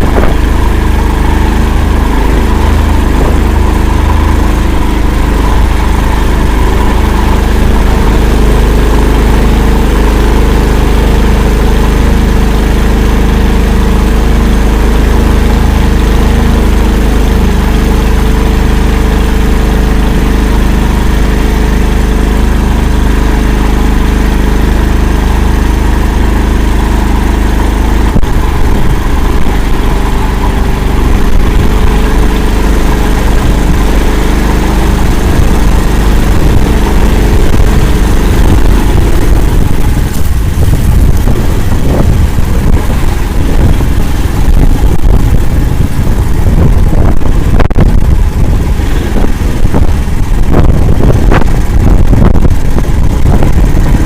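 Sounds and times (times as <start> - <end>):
vehicle engine running: 0.0 - 54.0.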